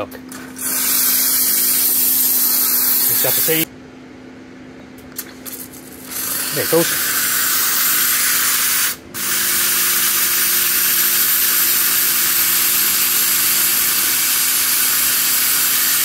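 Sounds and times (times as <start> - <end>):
faint machine hum: 0.0 - 16.0
steam wand hissing: 6.1 - 16.0.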